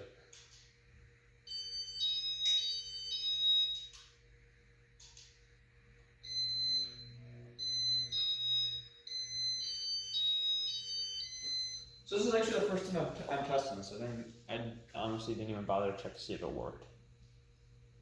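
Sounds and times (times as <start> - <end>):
ceiling fan motor hum: 0.0 - 18.0
high electronic beeping: 6.2 - 12.5.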